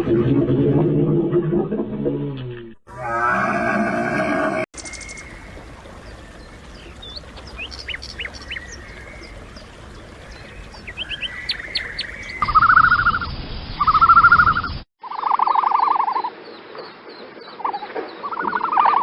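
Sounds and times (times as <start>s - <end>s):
loud buzzy bird calls: 4.8s - 16.3s
birds chirping: 4.8s - 19.0s.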